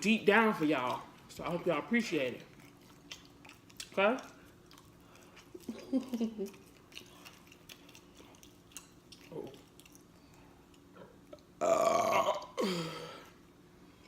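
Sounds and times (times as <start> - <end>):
woman burping loudly: 11.6 - 13.2.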